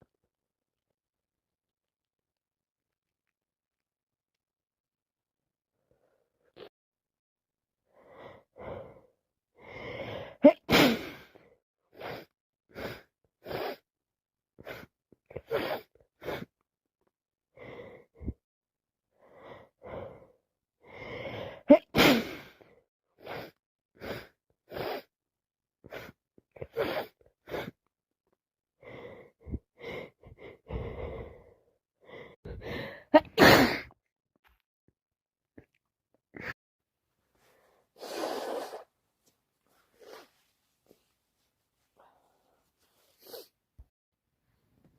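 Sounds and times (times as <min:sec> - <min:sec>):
person sneezing: 0:10.4 - 0:11.2, 0:21.7 - 0:22.5, 0:33.2 - 0:33.9, 0:38.0 - 0:38.9
gasping in-breaths: 0:28.8 - 0:33.1
short sniffs: 0:37.5 - 0:38.9, 0:39.7 - 0:41.0, 0:42.0 - 0:43.6.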